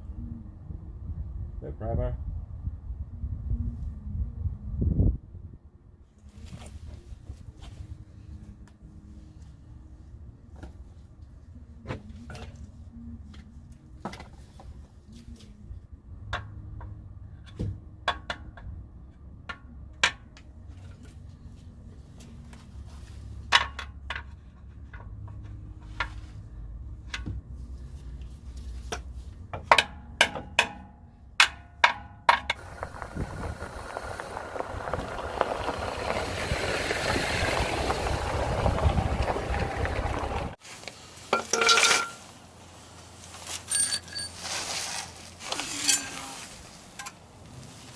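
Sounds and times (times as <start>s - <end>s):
steady rushing noise: 32.5s - 40.6s.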